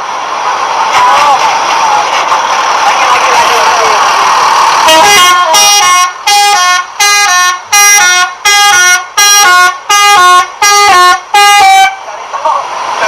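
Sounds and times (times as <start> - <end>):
musical air horn melody: 4.9 - 12.0.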